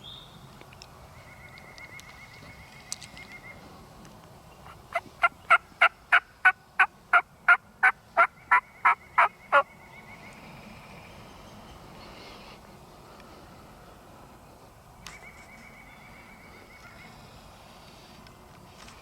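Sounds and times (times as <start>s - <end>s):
wild turkey yelping: 4.9s - 9.7s.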